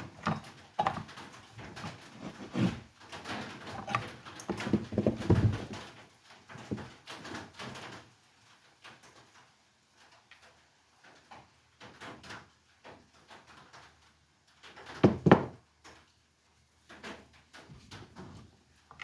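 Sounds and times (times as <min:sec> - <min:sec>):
tools clicking and knocking: 0:03.7 - 0:05.8.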